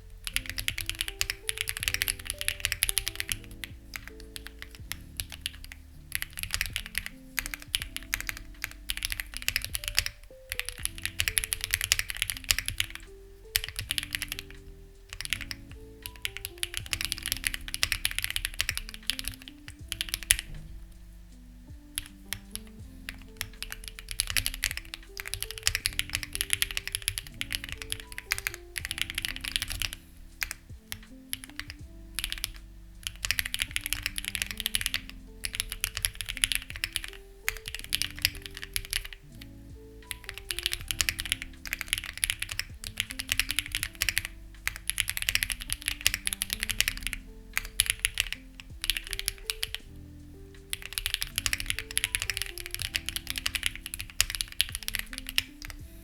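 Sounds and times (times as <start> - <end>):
soft background music: 0.0 - 56.0
mechanical keyboard key clacks: 0.2 - 13.0, 40.0 - 49.8.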